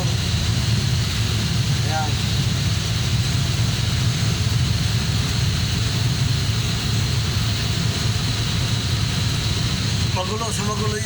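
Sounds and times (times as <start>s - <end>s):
chiller plant low hum: 0.0s - 11.0s.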